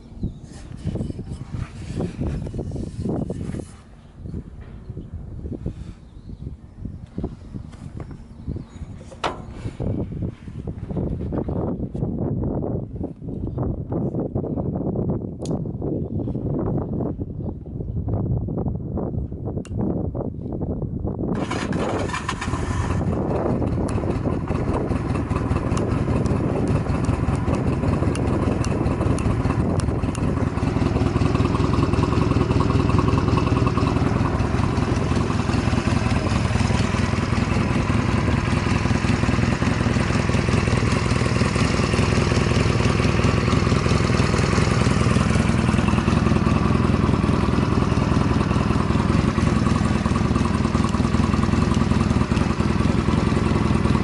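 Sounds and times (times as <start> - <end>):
motorcycle engine starting and idling: 7.9 - 11.8, 21.3 - 54.0.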